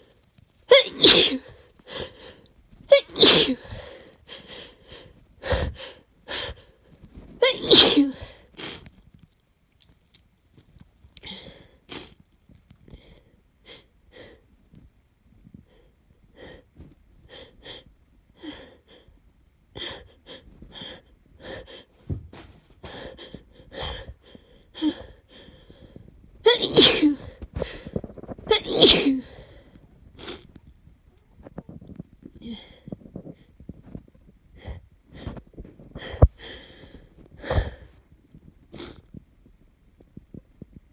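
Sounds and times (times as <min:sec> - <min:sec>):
person sneezing: 0:00.7 - 0:01.5, 0:02.9 - 0:03.9, 0:07.4 - 0:08.3, 0:26.5 - 0:27.4, 0:28.5 - 0:29.4.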